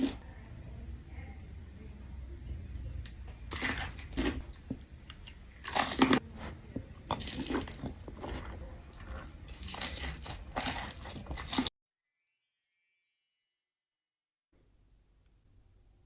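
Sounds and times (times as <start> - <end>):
crunchy chewing of fried chicken: 3.5 - 11.7.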